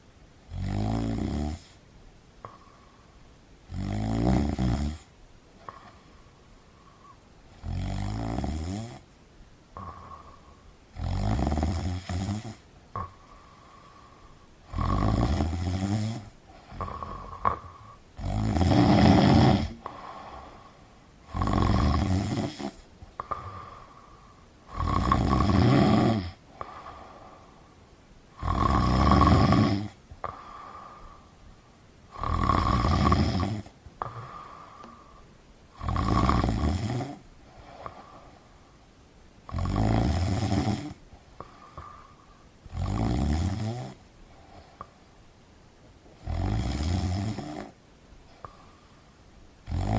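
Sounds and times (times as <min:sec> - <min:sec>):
cat snoring loudly: 0:00.5 - 0:01.8, 0:03.7 - 0:05.1, 0:07.5 - 0:09.0, 0:09.8 - 0:24.0, 0:24.7 - 0:27.4, 0:28.3 - 0:31.2, 0:32.1 - 0:35.1, 0:35.7 - 0:38.4, 0:39.5 - 0:42.1, 0:42.7 - 0:44.0, 0:46.2 - 0:47.8, 0:49.6 - 0:49.9.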